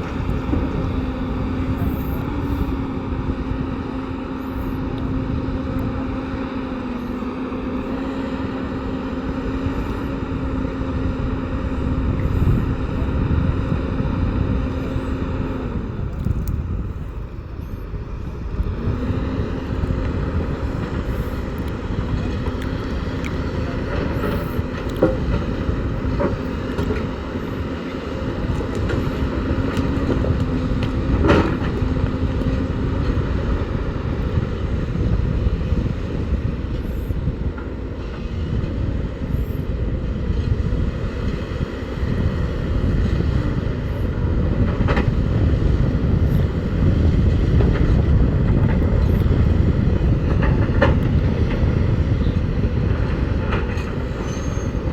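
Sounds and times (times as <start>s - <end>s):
diesel machinery rumbling: 0.0s - 54.9s.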